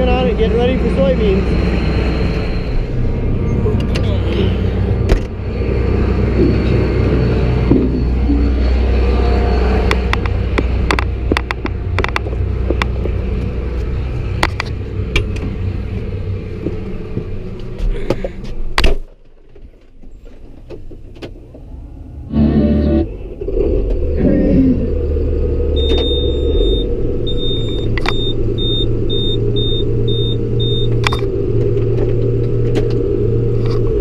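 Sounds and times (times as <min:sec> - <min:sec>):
farm machine engine running: 0:00.0 - 0:18.0, 0:22.3 - 0:34.0
low rumble: 0:00.0 - 0:34.0
sharp clicks and rattles: 0:09.8 - 0:15.6.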